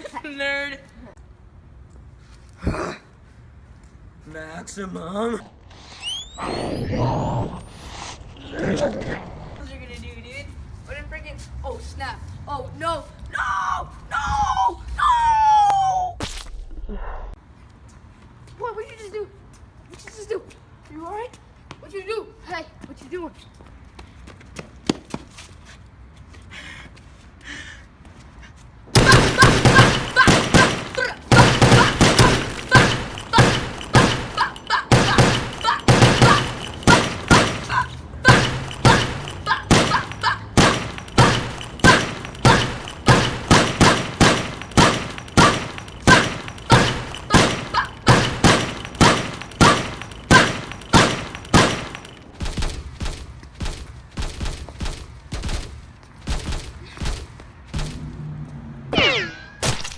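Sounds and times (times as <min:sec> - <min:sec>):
gunfire-like bangs: 0:29.0 - 0:52.7.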